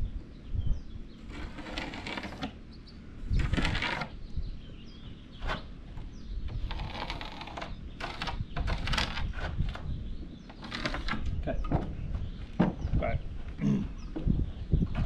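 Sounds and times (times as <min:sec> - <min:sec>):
scraping and rustling: 0:01.2 - 0:02.6, 0:03.4 - 0:04.2, 0:05.3 - 0:12.8.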